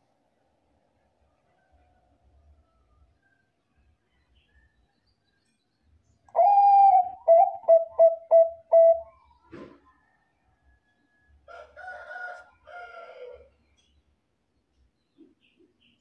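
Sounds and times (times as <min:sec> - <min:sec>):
dove cooing: 0:06.4 - 0:09.1.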